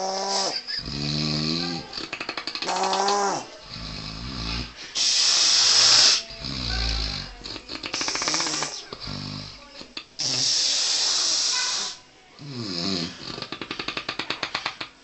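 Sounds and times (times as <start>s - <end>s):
rattling snores: 0.0s - 4.8s, 5.4s - 9.6s, 12.4s - 14.9s
long hissing breath: 3.6s - 7.2s, 10.2s - 12.0s.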